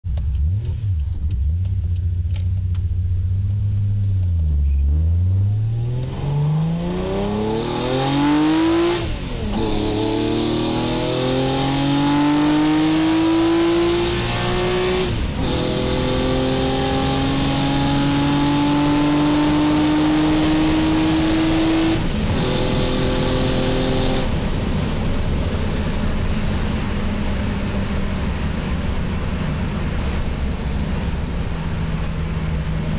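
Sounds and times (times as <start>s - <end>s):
car engine accelerating: 0.1s - 32.9s.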